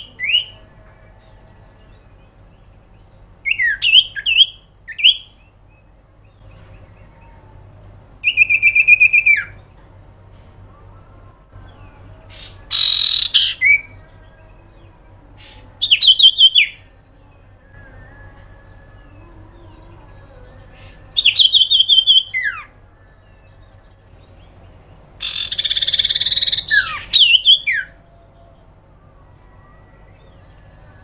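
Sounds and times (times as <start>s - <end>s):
bird chirps and trills: 2.0s - 31.0s
harsh rasping bird call: 12.3s - 14.0s, 25.2s - 27.9s.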